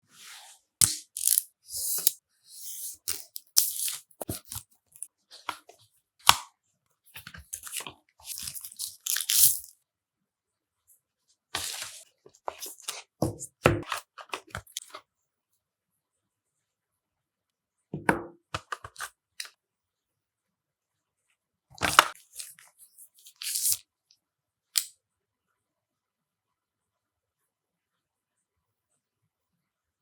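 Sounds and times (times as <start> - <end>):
plastic wrap tearing and crinkling: 0.8 - 2.1, 7.2 - 9.7, 23.2 - 23.8.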